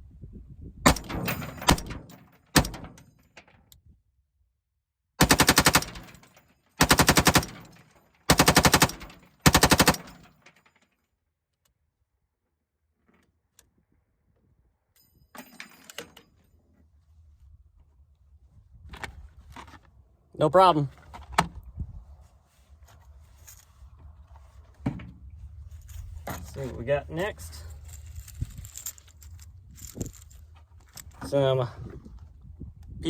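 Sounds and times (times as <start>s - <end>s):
automatic gunfire bursts: 5.2s - 6.2s, 6.8s - 7.7s, 8.3s - 10.2s
gun clacks: 5.2s - 10.6s.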